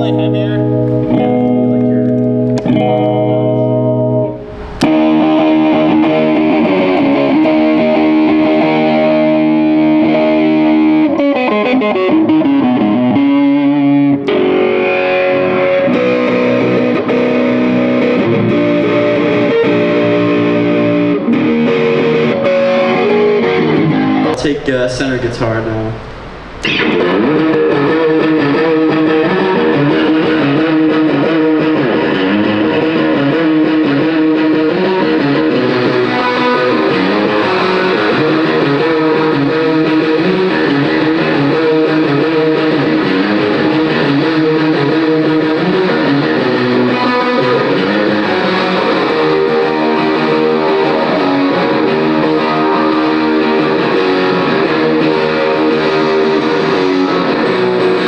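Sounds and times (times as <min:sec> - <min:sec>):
electric guitar playing: 0:00.0 - 0:58.0.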